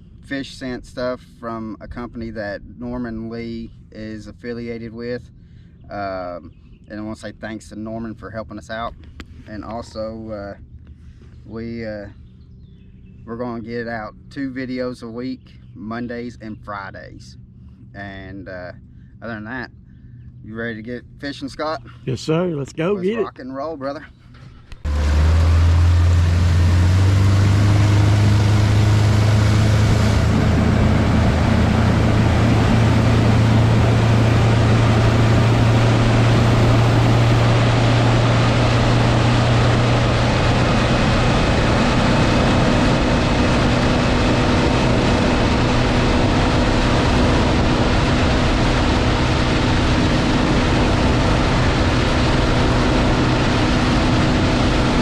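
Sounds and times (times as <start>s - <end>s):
outboard motor running: 24.2s - 55.0s.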